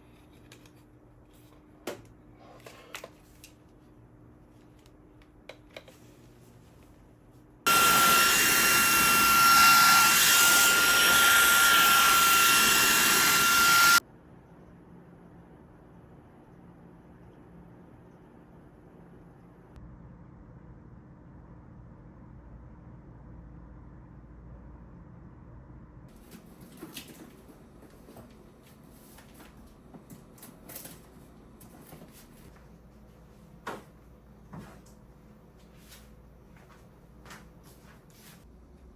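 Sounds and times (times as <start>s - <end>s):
stick vacuum cleaner running: 7.7s - 14.0s.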